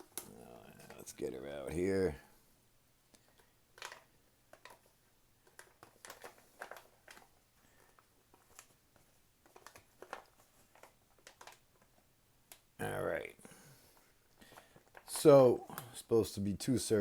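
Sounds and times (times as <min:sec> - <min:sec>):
food pouch crinkling: 0:03.3 - 0:08.8, 0:09.4 - 0:12.0.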